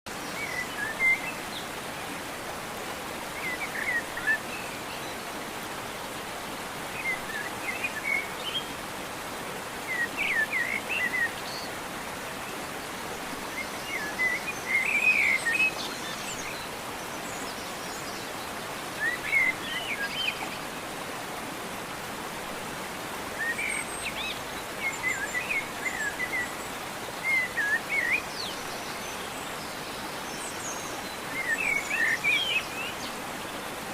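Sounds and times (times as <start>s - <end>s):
steady background hiss: 0.1s - 33.9s
songbird chirping: 23.2s - 33.9s.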